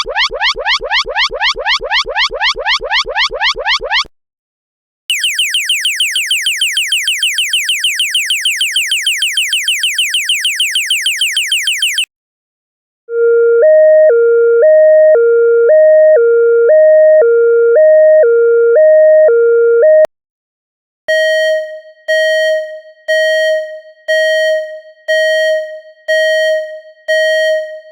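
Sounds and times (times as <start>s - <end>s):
electronic alarm beeps: 5.1s - 12.1s, 21.1s - 27.9s
two-tone electronic alarm: 5.1s - 12.1s, 21.1s - 27.9s.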